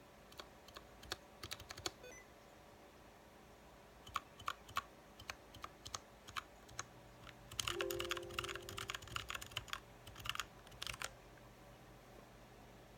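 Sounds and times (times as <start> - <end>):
typing on mechanical keyboard: 0.3 - 2.0, 4.1 - 11.1.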